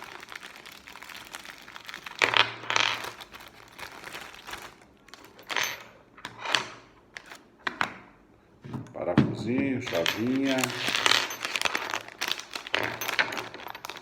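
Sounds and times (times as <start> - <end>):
packaging crinkling: 0.0 - 5.5, 10.1 - 14.0
small metal parts clinking: 4.0 - 6.8, 9.8 - 14.0.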